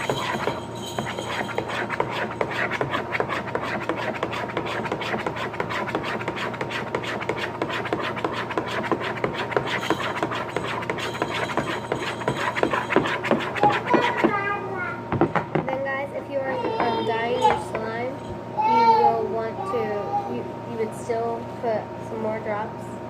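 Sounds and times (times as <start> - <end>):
spoon scraping in bowl: 0.0 - 14.3.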